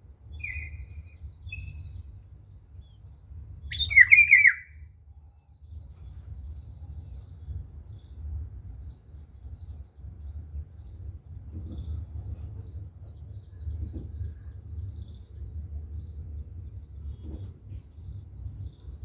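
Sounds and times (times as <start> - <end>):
bird chirping call: 0.3 - 2.1, 3.7 - 4.8.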